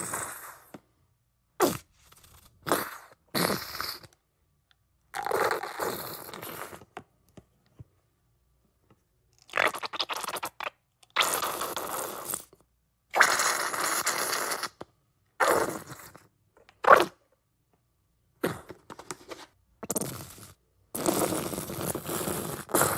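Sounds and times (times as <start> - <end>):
ketchup bottle squirting and sputtering: 9.5 - 12.3.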